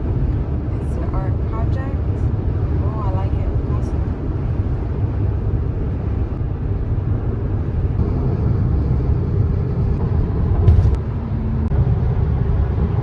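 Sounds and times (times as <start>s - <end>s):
road and engine rumble in car: 0.0s - 13.0s
brief knock: 10.7s - 11.0s.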